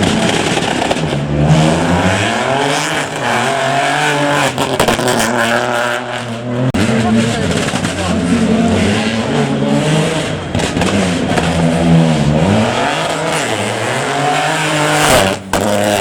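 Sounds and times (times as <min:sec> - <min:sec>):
rally car engine revving: 0:00.0 - 0:16.0.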